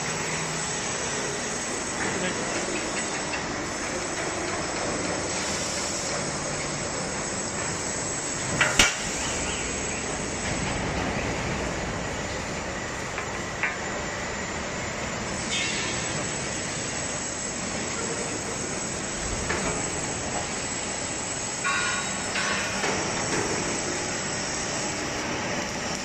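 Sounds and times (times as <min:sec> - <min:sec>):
hydraulic press humming and hissing: 0:00.0 - 0:26.0
sharp metallic clank: 0:08.6 - 0:09.6, 0:21.6 - 0:23.0.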